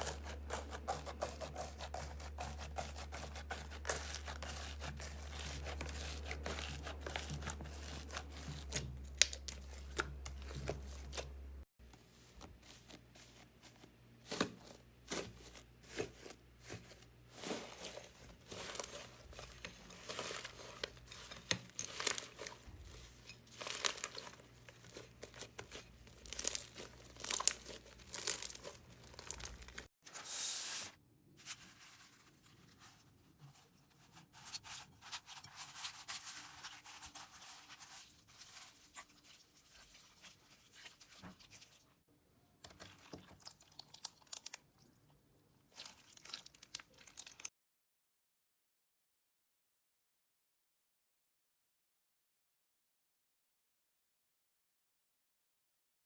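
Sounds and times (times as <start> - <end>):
crunchy slime crackling: 17.4 - 29.9.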